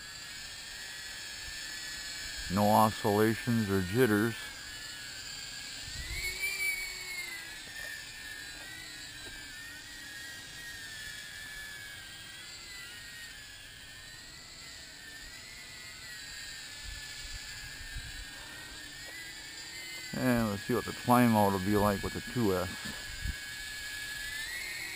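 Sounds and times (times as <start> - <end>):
drone high-pitched whine: 0.0 - 24.9.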